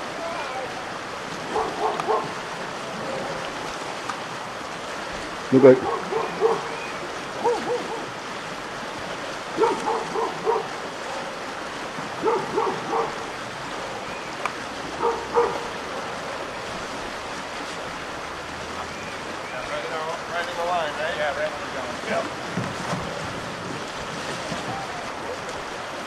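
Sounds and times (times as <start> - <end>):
creek rapids rushing: 0.0 - 26.0
dog barking: 1.5 - 2.4, 5.6 - 6.8, 7.4 - 8.1, 9.6 - 11.3, 12.2 - 13.3, 15.0 - 16.1.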